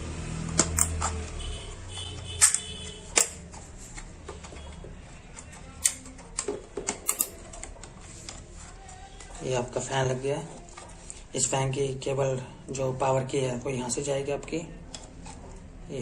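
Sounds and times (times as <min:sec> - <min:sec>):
plastic clips snapping: 0:05.8 - 0:08.0.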